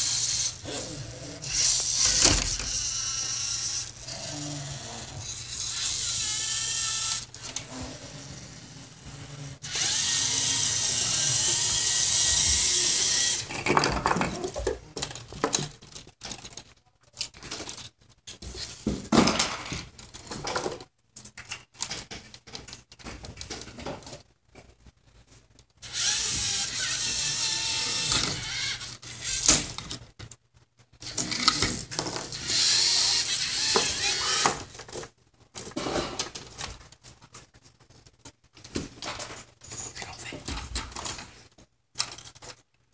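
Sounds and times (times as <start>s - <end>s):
small electric motors whirring: 0.0s - 0.7s, 1.4s - 13.5s, 25.8s - 29.7s, 31.0s - 34.6s.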